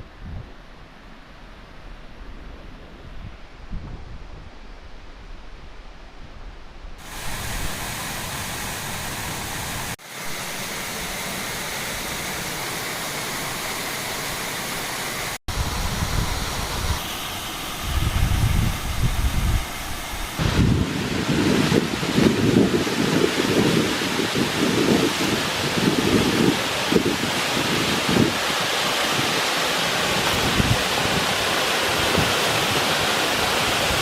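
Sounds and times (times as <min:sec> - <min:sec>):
waterfall rushing: 0:07.0 - 0:34.0
wind buffeting microphone: 0:15.5 - 0:17.1, 0:17.7 - 0:34.0.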